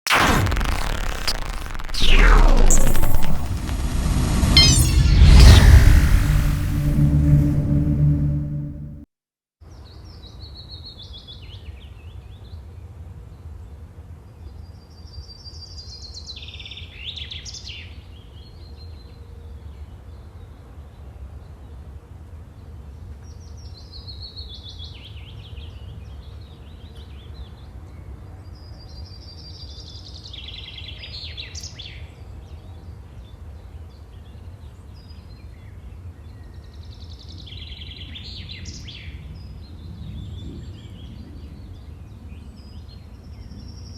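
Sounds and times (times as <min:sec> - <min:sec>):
steady low wind: 0:00.5 - 0:09.0.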